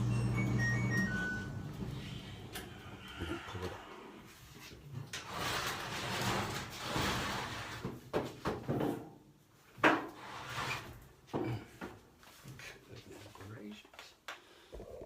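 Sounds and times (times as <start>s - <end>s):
vent parts scraping and sliding: 4.3s - 8.0s, 10.1s - 11.0s.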